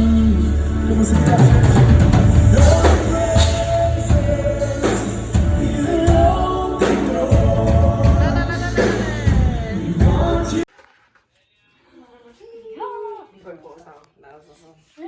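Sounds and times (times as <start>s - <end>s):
gospel music with singing: 0.0s - 10.7s.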